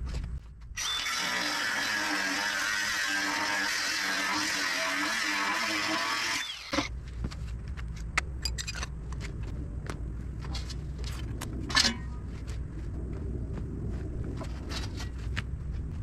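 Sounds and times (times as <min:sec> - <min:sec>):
steady low rumble: 0:06.9 - 0:16.0.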